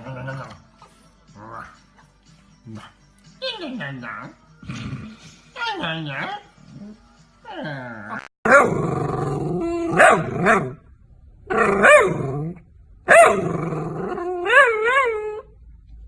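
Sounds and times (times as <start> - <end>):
dog howling and growling: 0.0 - 1.8, 5.7 - 10.8, 11.4 - 15.6.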